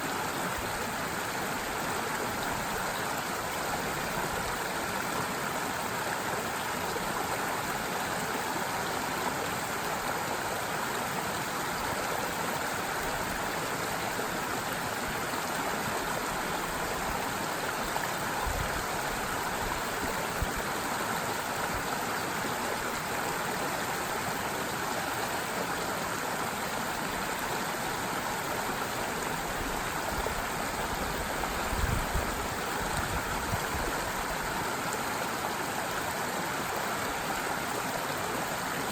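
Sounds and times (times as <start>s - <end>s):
stream water babbling: 0.0s - 38.9s.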